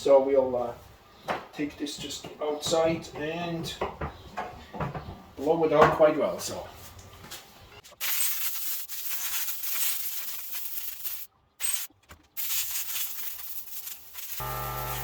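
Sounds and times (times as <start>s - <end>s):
compressed air hissing: 12.4s - 15.0s.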